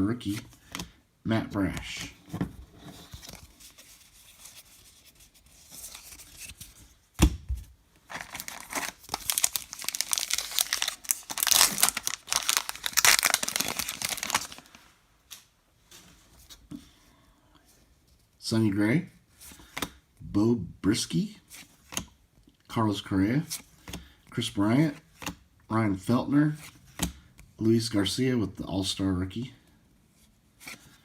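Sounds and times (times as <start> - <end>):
wrapper tearing and crinkling: 8.1 - 14.8.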